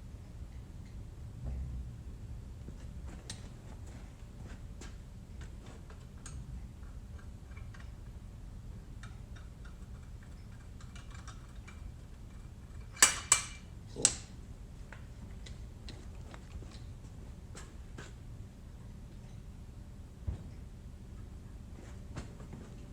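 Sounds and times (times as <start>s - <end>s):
steady low hum: 0.0s - 22.9s
metal tools clicking and tapping: 5.9s - 8.2s, 9.0s - 14.3s
sharp metallic clatters: 9.1s - 14.2s.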